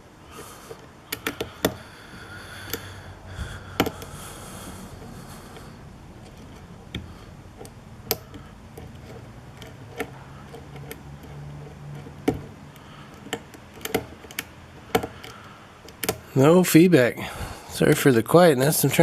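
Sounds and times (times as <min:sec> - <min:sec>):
lock pick ticking on pins: 0:00.7 - 0:02.9, 0:03.7 - 0:04.2, 0:05.5 - 0:16.4.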